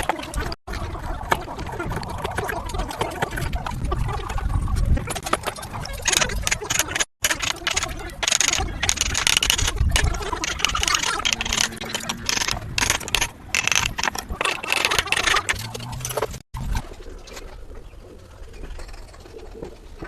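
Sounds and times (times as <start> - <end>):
hand tools scraping wood: 6.2 - 16.4.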